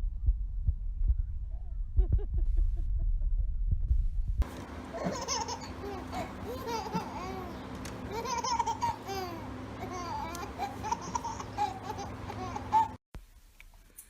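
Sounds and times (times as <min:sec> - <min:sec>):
baby babbling and laughing: 0:04.9 - 0:13.0.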